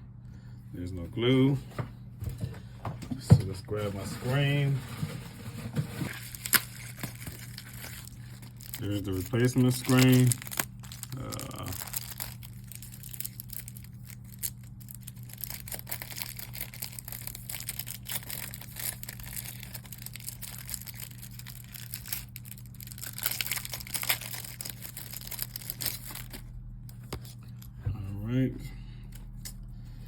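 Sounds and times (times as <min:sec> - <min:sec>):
low steady hum: 0:00.0 - 0:30.0
plastic packaging crinkling: 0:03.7 - 0:26.5.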